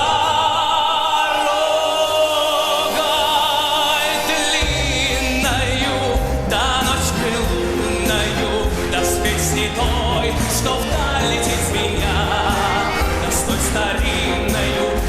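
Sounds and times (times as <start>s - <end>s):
singing over a full band: 0.0s - 15.0s
pulsing bass: 4.6s - 15.0s.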